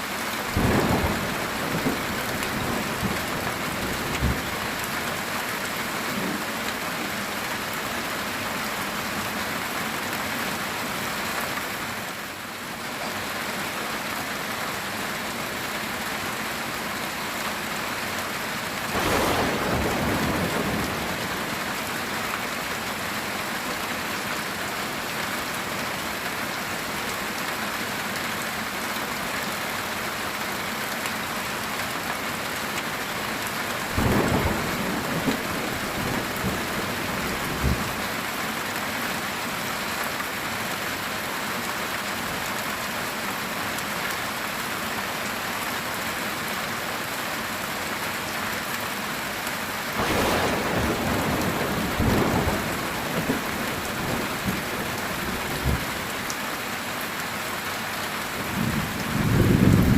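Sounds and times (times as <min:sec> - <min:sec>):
heavy rain on a tin roof: 0:00.0 - 0:59.9
thunder claps: 0:19.0 - 0:21.5, 0:50.0 - 0:56.0.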